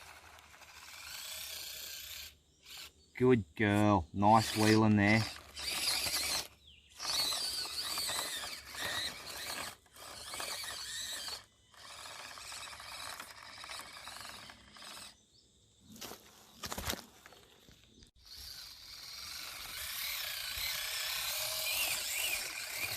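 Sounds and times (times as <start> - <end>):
small electric motor whining: 0.0 - 3.1, 3.7 - 15.3, 18.1 - 22.9
tyres scrabbling on rock: 4.4 - 15.1.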